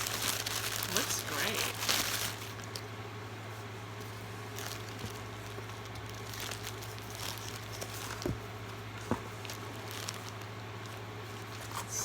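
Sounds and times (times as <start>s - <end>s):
packaging crinkling and rustling: 0.0s - 12.0s
steady low hum: 0.0s - 12.0s
small knocks: 8.1s - 9.6s.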